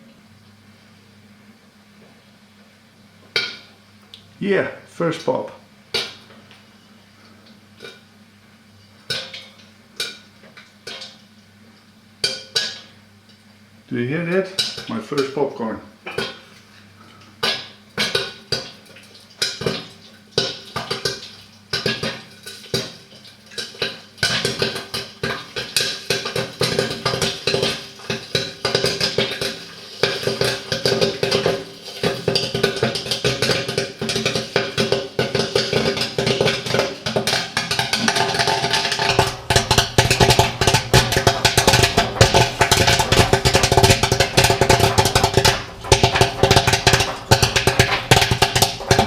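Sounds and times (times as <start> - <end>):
popcorn popping: 3.3 - 4.6, 5.9 - 6.6, 7.2 - 8.1, 8.9 - 11.4, 12.2 - 13.0, 14.1 - 49.0
popcorn machine stirrer running: 19.4 - 49.0.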